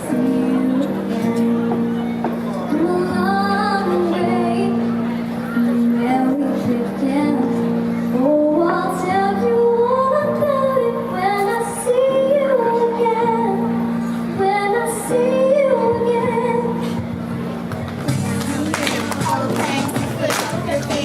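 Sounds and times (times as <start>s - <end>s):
musical accompaniment: 0.0s - 21.0s
group of voices singing: 18.1s - 21.0s.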